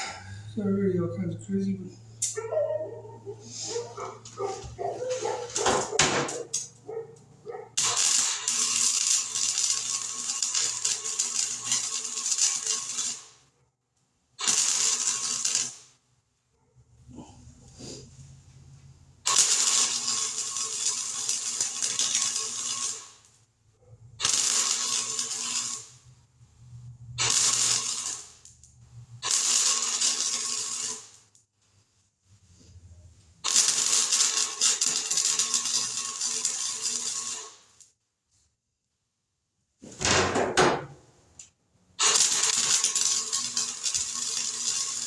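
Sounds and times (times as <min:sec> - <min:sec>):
welding crackling sizzle: 0:03.5 - 0:13.4, 0:14.4 - 0:16.0, 0:19.2 - 0:23.4, 0:24.2 - 0:26.2, 0:27.1 - 0:31.4, 0:33.3 - 0:37.9, 0:41.4 - 0:45.0.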